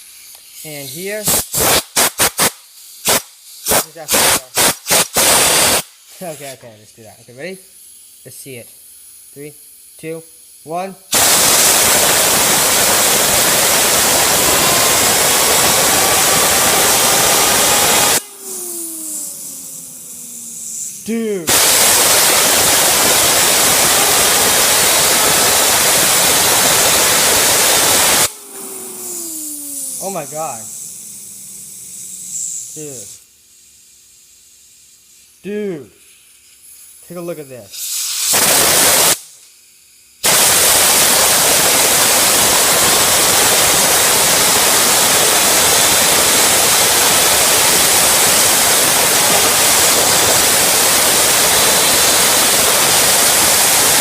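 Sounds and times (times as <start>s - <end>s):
compressed air hiss: 0.0s - 54.0s
fidget spinner whine: 11.3s - 35.1s.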